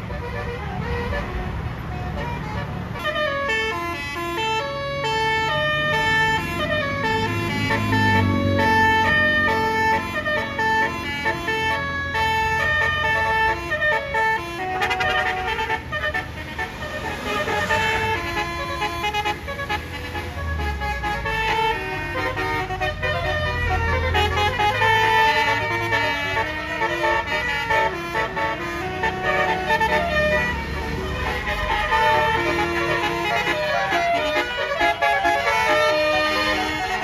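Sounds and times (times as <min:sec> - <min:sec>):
bus engine running: 0:00.0 - 0:37.0
multi-tone bus air horn melody: 0:00.0 - 0:37.0.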